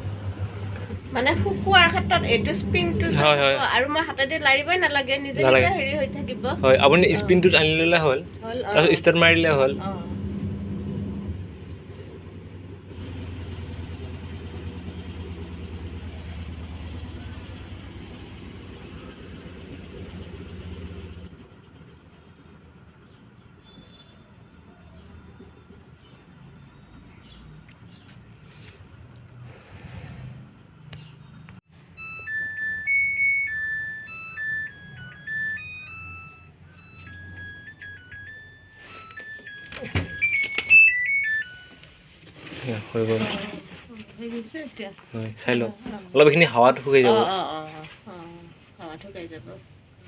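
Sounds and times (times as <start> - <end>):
washing machine drum rumble: 0.0 - 21.6
washing machine motor hum: 0.0 - 23.5, 31.8 - 43.6.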